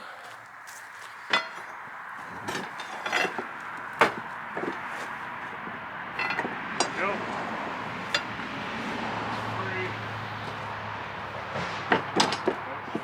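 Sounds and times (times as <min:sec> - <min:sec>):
wood and metal knocks and clanks: 0:01.3 - 0:01.8, 0:02.4 - 0:07.0, 0:10.4 - 0:13.0.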